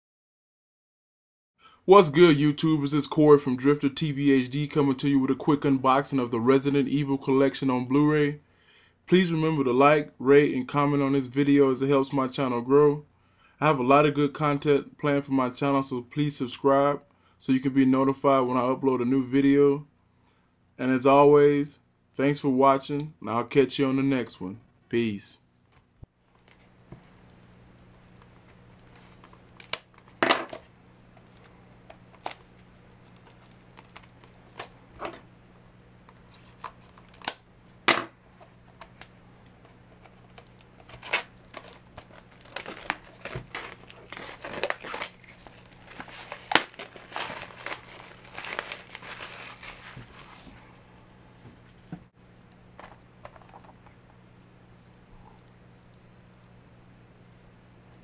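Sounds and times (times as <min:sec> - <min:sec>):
faint low hum: 0:01.7 - 0:58.0
plastic wrap crinkling and tearing: 0:28.0 - 0:34.8, 0:36.2 - 0:37.4, 0:38.3 - 0:50.5.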